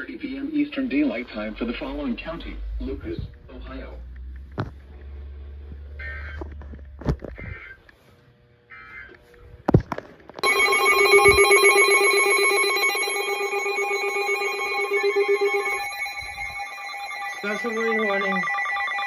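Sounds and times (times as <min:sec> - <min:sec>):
weather radio alarm pulsing: 0:00.7 - 0:03.2, 0:10.4 - 0:19.0.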